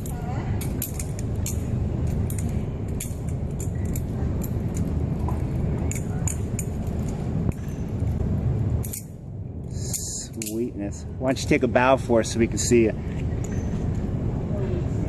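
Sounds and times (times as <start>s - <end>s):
butterfly knife handles clacking: 0.0s - 8.1s, 8.8s - 10.7s.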